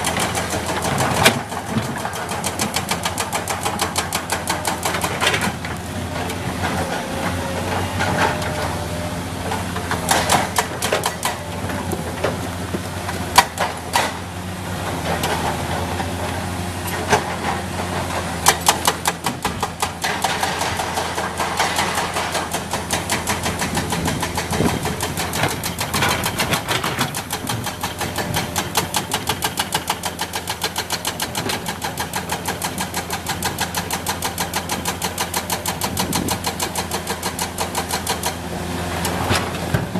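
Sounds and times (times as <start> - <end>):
heavy diesel engine running: 0.0 - 39.9
sharp knocks and clatters: 18.2 - 38.4.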